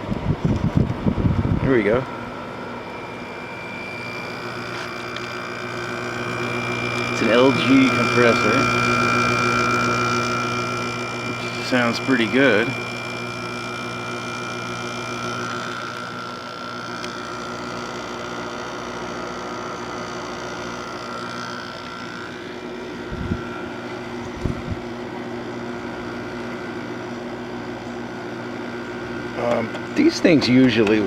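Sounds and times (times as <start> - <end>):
fan airflow: 0.0 - 13.8, 14.4 - 31.0
air conditioner compressor humming: 0.0 - 31.0.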